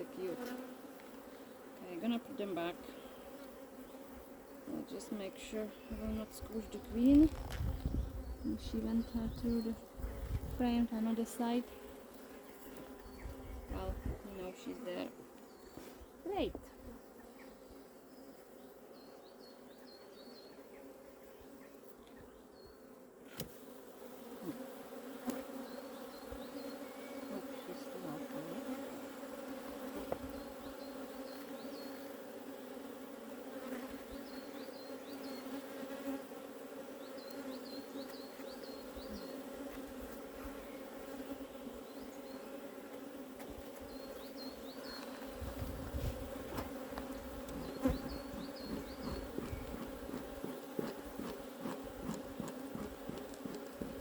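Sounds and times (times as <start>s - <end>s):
bees buzzing at a hive: 0.0s - 54.0s.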